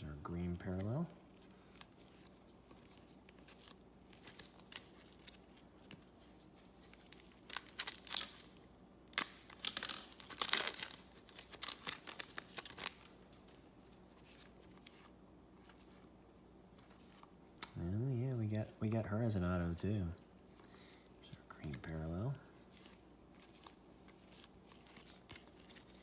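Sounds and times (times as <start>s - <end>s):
wrapper tearing and crinkling: 6.8s - 15.0s.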